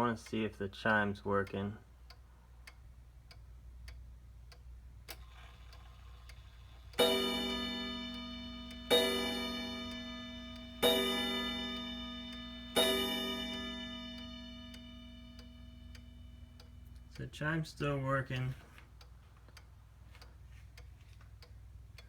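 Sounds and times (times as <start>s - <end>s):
wall clock ticking: 0.0s - 22.0s
clock mechanism click: 0.2s - 17.3s
clock chime striking: 7.0s - 16.4s.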